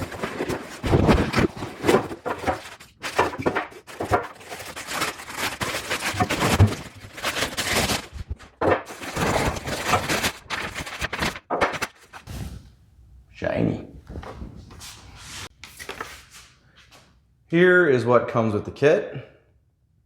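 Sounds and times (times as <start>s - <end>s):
cardboard box rustling and scraping: 0.0s - 11.3s
box knocks and thunks: 0.2s - 4.3s.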